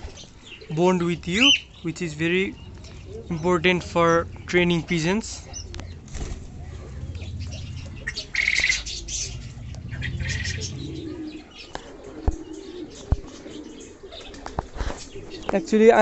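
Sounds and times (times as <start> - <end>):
pigeons cooing: 0.0 - 16.0
wing flapping: 2.4 - 13.6.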